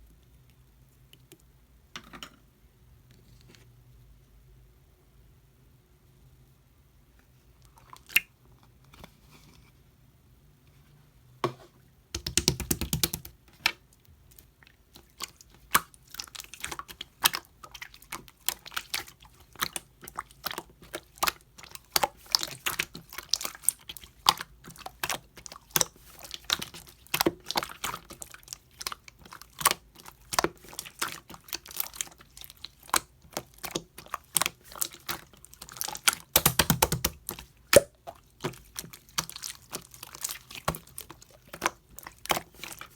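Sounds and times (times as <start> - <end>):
slime squished by hand: 14.4 - 42.9.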